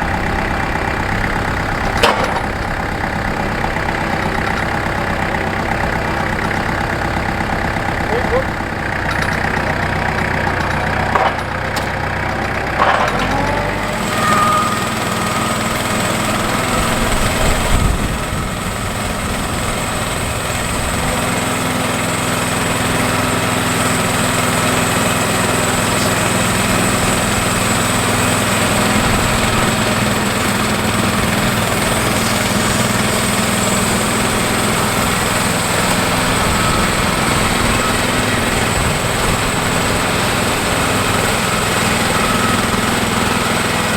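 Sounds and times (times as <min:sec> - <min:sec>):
small gasoline engine running: 0:00.0 - 0:43.9.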